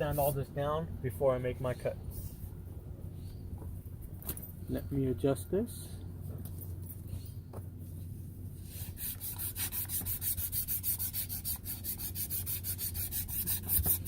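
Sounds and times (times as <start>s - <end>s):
sanding copper pipe by hand: 8.6s - 14.0s.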